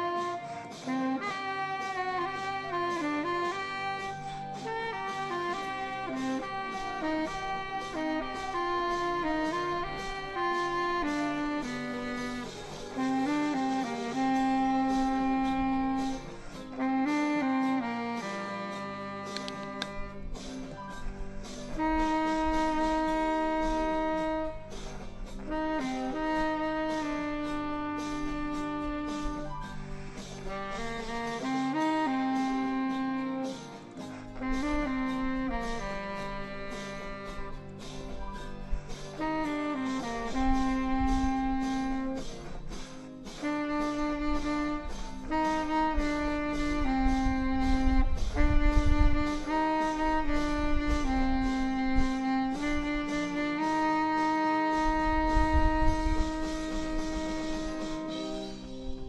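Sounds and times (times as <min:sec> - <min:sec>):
saxophone playing a melody: 0:00.0 - 0:59.0.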